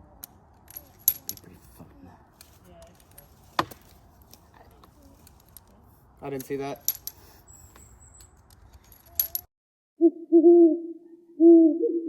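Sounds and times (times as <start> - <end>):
handling noise and clicks: 0.1 - 1.6, 2.3 - 9.5
owl-like hooting calls: 10.0 - 12.0.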